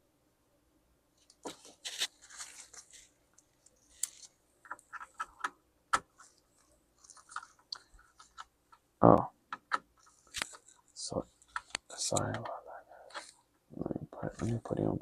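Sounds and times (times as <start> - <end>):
laptop parts clicking and scraping: 1.4 - 8.8, 9.6 - 12.4.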